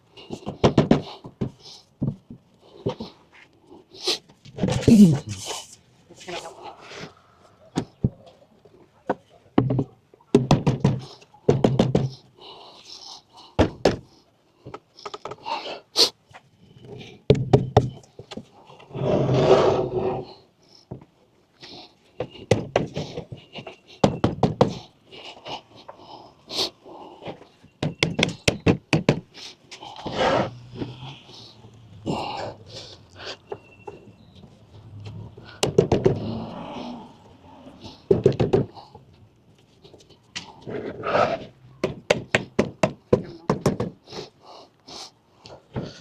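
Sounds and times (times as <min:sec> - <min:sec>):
low voice: 0:04.7 - 0:07.8, 0:30.0 - 0:38.0.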